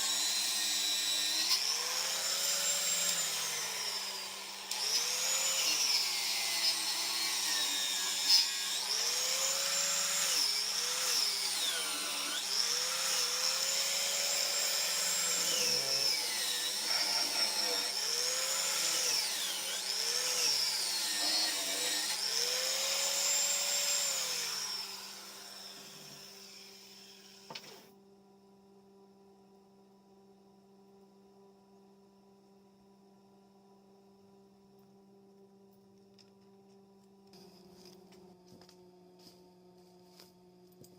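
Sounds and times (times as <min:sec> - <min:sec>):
electric power tool running: 0:00.0 - 0:27.9.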